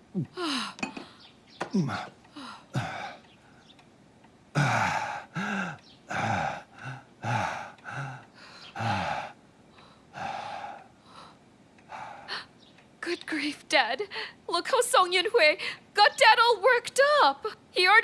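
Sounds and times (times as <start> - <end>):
man gasping and groaning: 0.0 - 0.7, 1.8 - 3.2, 4.6 - 9.4.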